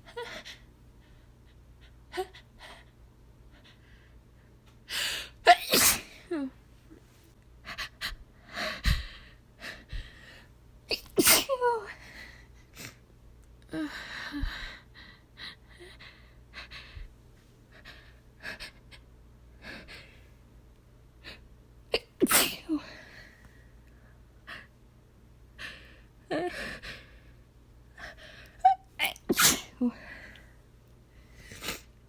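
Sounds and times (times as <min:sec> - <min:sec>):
woman sneezing: 0:05.5 - 0:06.3, 0:10.9 - 0:11.9, 0:22.0 - 0:22.9, 0:29.0 - 0:30.0
short breaths and sniffs: 0:31.3 - 0:31.9.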